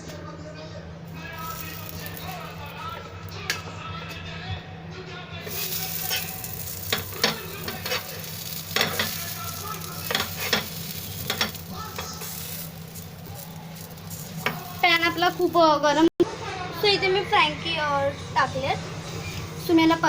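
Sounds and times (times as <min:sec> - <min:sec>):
fries sizzling in hot oil: 0:01.1 - 0:03.0, 0:05.4 - 0:16.0
utensil clicking on pan: 0:05.5 - 0:14.8.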